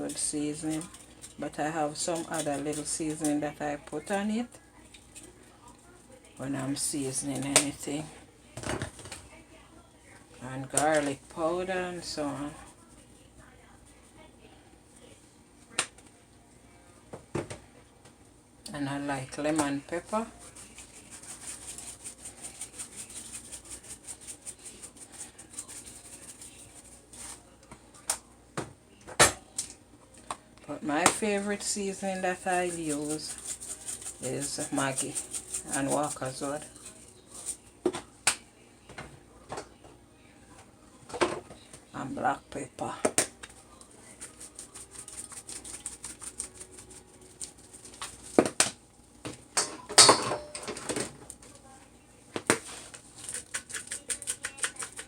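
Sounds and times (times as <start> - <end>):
seasoning shaker rattling: 0.1 - 3.4, 20.2 - 27.4, 31.6 - 37.6, 44.0 - 48.4, 52.6 - 55.0
seasoning shaker clicking: 53.2 - 55.0.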